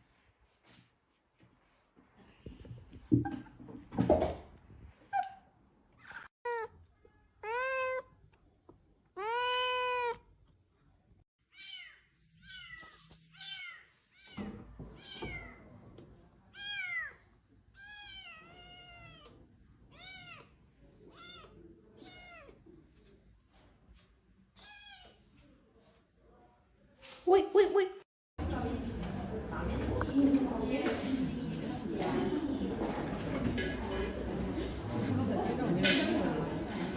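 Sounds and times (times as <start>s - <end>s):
cat meowing: 7.4s - 8.1s, 9.2s - 10.3s.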